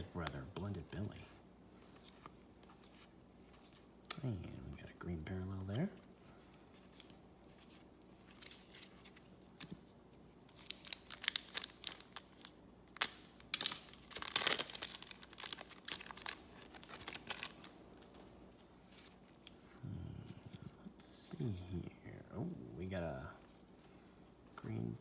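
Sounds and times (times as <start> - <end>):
foil card pack crackling: 10.5 - 18.1.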